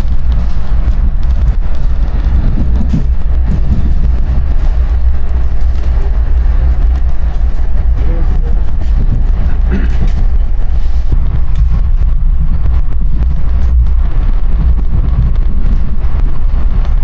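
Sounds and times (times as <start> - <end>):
train rumbling: 0.0 - 17.0
faint voices: 2.9 - 11.4.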